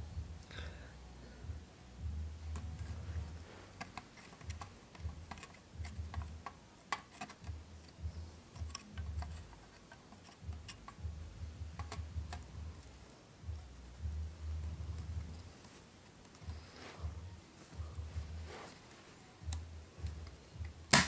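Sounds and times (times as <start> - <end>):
plastic and metal clicks: 3.8 - 11.0.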